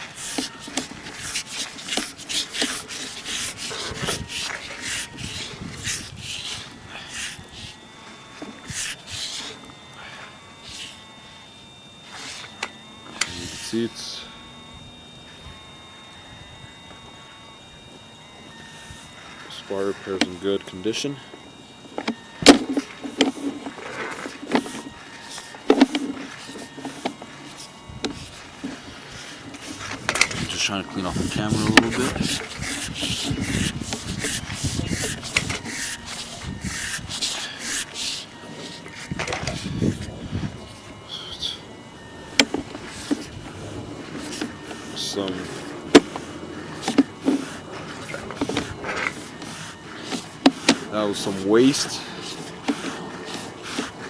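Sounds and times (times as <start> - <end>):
cable scraping in pipe: 0.0 - 9.7, 21.9 - 54.0.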